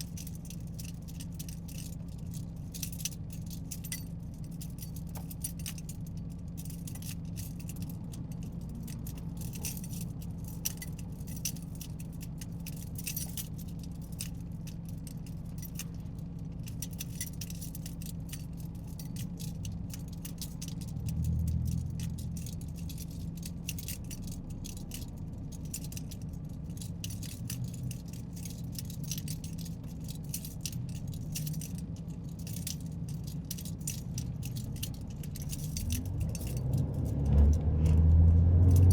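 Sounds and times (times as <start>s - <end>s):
small ticks and rattles: 0.0s - 38.9s
car driving drone from inside cabin: 17.5s - 38.9s.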